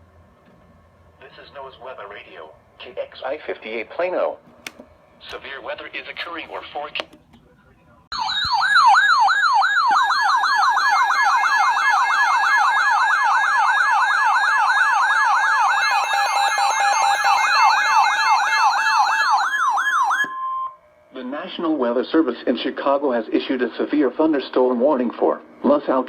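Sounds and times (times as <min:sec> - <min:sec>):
electronic yelp siren: 0:08.1 - 0:26.0.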